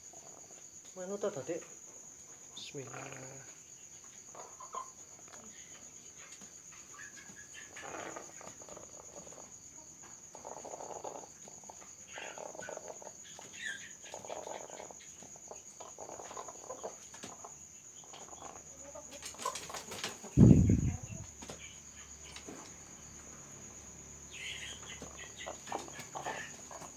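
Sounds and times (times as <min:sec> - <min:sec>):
crickets trilling: 0:00.0 - 0:26.9
rooster making throaty sounds: 0:20.4 - 0:21.3.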